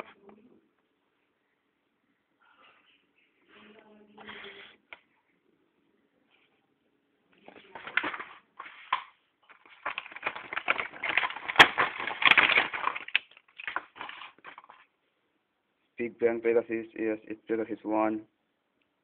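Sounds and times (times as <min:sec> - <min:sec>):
plastic packaging crinkling: 0:07.5 - 0:14.9.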